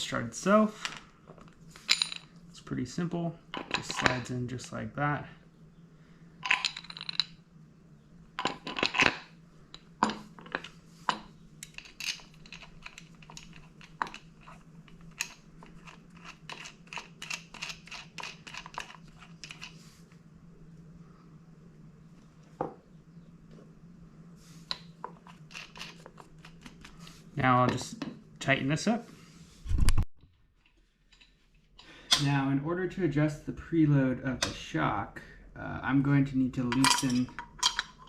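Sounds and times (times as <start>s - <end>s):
steady low hum: 0.0s - 38.0s
metal clicks and clinks: 36.7s - 38.0s.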